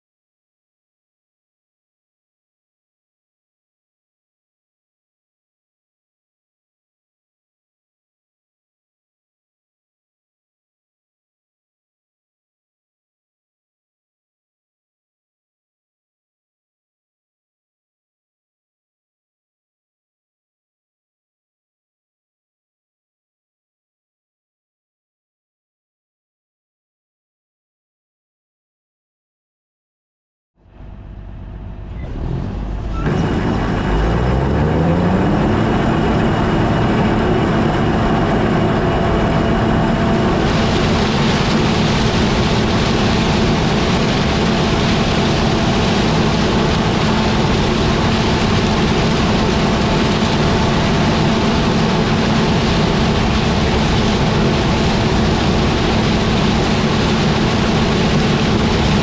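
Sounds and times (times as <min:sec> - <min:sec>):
combine harvester running: 0:30.6 - 0:59.0.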